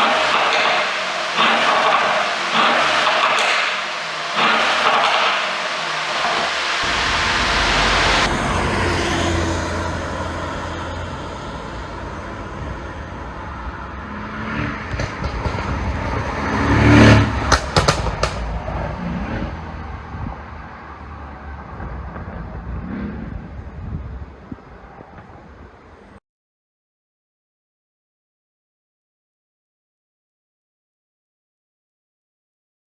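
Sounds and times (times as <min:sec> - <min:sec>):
car engine droning: 0:00.0 - 0:26.2
exhaust pops and crackles: 0:14.8 - 0:16.3, 0:17.4 - 0:19.0.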